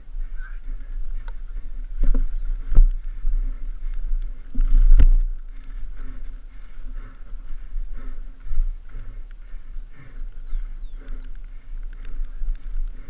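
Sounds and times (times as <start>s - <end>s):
bike knocking and rattling: 0.0s - 7.7s
wind rumbling on microphone: 0.0s - 13.0s.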